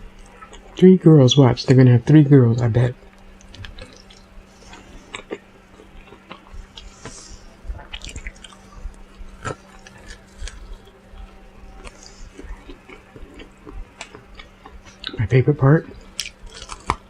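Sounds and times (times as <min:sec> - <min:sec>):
faint steady hum: 0:00.0 - 0:17.0
chewing and lip-smacking: 0:00.1 - 0:00.8, 0:03.0 - 0:15.2, 0:15.8 - 0:17.0
soft food crunches: 0:03.0 - 0:15.2, 0:15.8 - 0:17.0.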